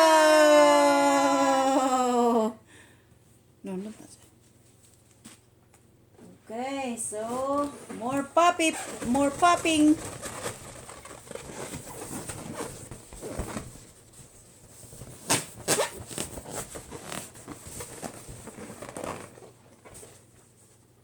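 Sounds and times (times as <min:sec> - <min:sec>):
balloons being handled: 0:07.2 - 0:21.0
balloons popping: 0:08.3 - 0:13.8, 0:15.0 - 0:19.6.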